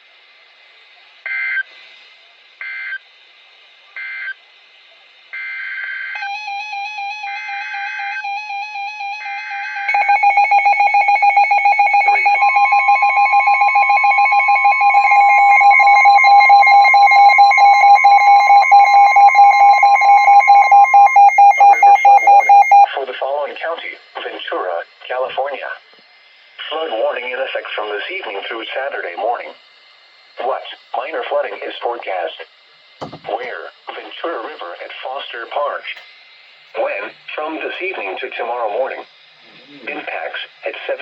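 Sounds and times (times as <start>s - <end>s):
rapidly pulsing electronic alarm: 5.4s - 22.9s
data bursts: 6.2s - 22.9s
steady warning tone: 6.2s - 22.9s.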